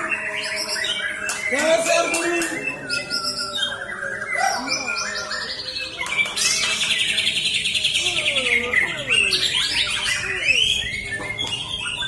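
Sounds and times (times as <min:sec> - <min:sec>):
bird singing whistles and trills: 0:00.0 - 0:12.0.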